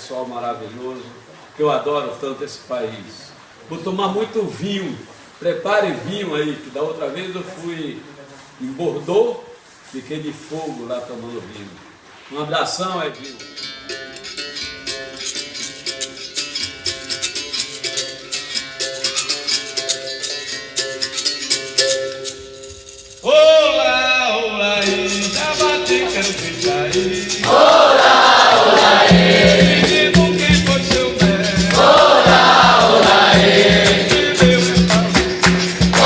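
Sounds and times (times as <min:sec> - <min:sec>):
shaken rattle: 0:19.0 - 0:23.3, 0:24.8 - 0:36.0
chorus answering: 0:23.2 - 0:36.0
solo singer: 0:23.2 - 0:36.0
berimbau: 0:24.6 - 0:36.0
steady drum beat: 0:24.8 - 0:36.0.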